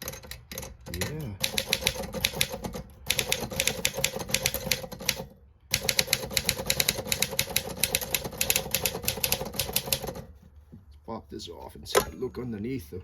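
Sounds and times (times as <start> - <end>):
typewriter keystrokes: 0.0 - 10.2.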